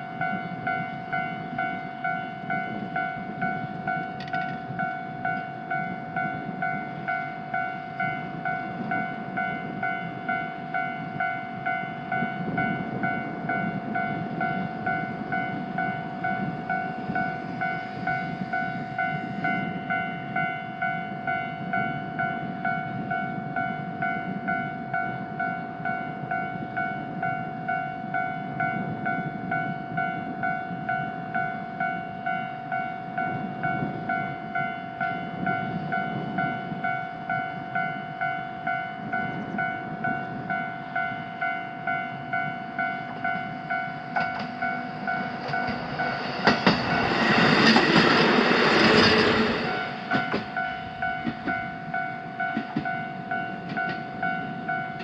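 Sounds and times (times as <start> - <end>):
railroad crossing bell clanging: 0.0 - 55.0
train rumbling past: 0.0 - 55.0.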